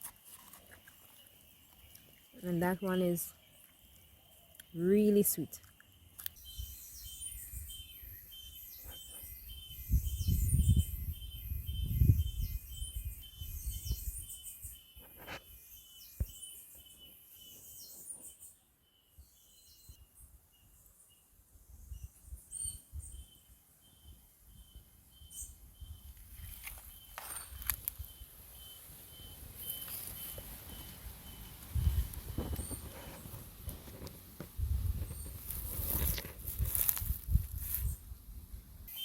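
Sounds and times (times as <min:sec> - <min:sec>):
small birds chirping: 0:00.1 - 0:34.1
insect pulsing trill: 0:23.2 - 0:33.0.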